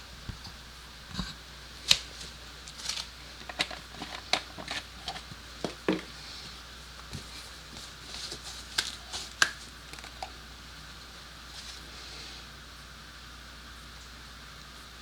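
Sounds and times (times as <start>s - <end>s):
small objects clicking and knocking: 1.9s - 6.2s, 8.0s - 10.4s.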